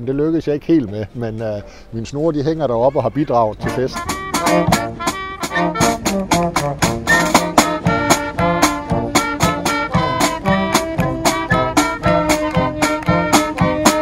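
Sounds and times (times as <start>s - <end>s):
swing jazz with brass: 3.6s - 14.0s.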